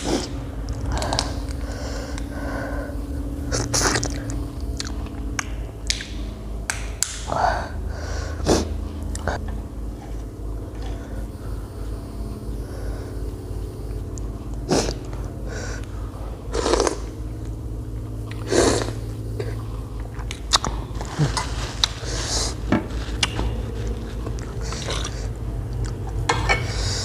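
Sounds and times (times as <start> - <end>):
crunching and slurping: 0.0 - 6.4, 7.7 - 27.0
steady low hum: 0.0 - 27.0
person chewing and biting: 18.3 - 26.2.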